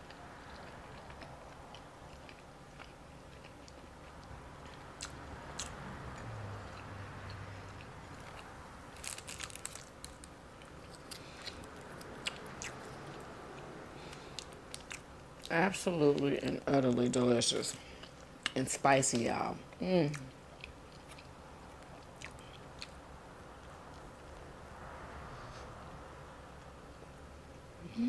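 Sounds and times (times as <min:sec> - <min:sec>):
person chewing food: 0:00.0 - 0:15.5, 0:20.1 - 0:23.0.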